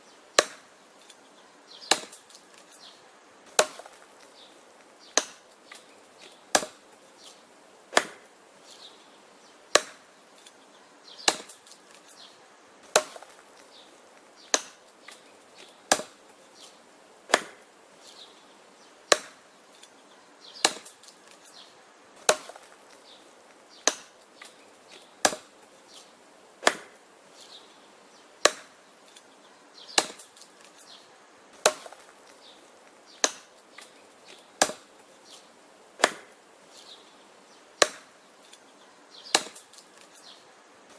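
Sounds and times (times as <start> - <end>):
axe chopping wood: 0.4 - 0.7, 1.8 - 2.7, 3.5 - 6.9, 7.9 - 8.3, 9.7 - 10.1, 11.2 - 12.1, 12.8 - 17.7, 19.1 - 19.4, 20.6 - 21.6, 22.2 - 27.0, 28.4 - 29.2, 29.9 - 30.8, 31.6 - 36.4, 37.8 - 38.2, 39.3 - 40.1.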